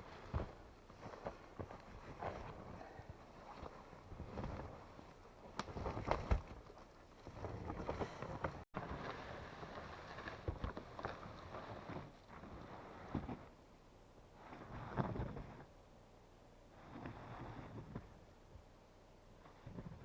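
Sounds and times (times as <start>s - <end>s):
rustling: 0.0s - 13.6s.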